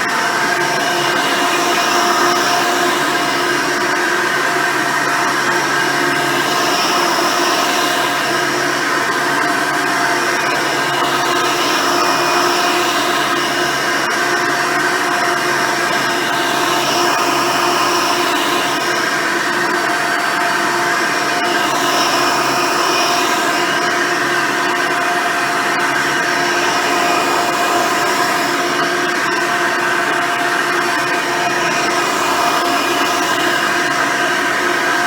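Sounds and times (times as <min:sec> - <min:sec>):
upright vacuum cleaner running: 0:00.0 - 0:35.0.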